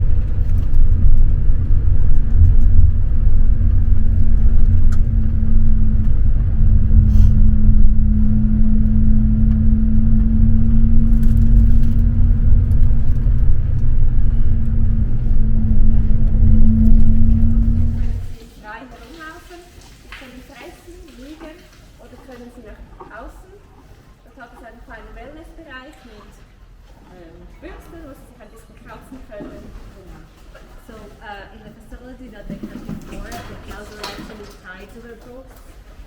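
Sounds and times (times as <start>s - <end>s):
moving vehicle engine rumble: 0.0s - 18.4s.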